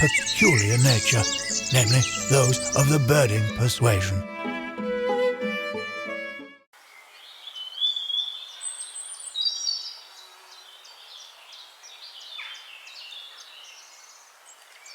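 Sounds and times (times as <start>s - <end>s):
birds chirping and whistling: 0.0s - 4.2s, 7.5s - 10.0s.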